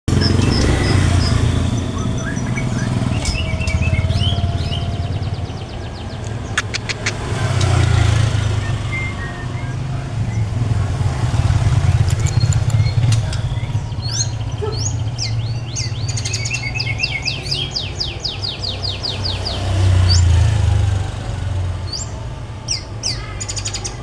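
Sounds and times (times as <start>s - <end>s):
songbird singing whistled notes: 0.1s - 7.0s, 7.7s - 10.6s, 12.1s - 19.4s
low engine rumble: 0.1s - 19.4s
sharp clicks: 6.2s - 8.0s.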